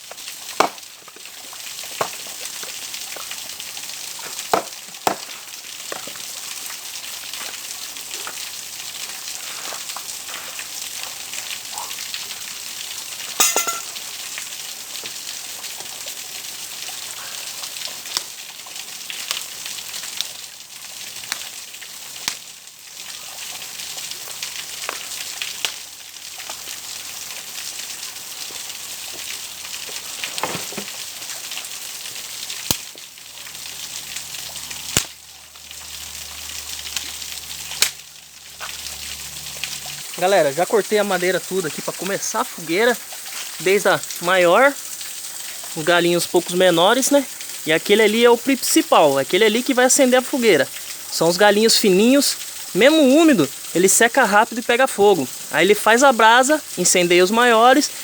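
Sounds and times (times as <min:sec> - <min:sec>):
sharp crack: 0:00.6 - 0:00.9, 0:37.8 - 0:38.0.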